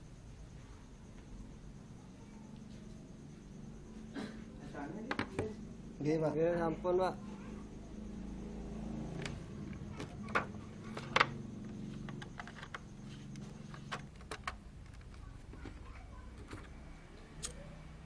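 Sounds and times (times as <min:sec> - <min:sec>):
sharp clicks and knocks: 0:12.0 - 0:16.8.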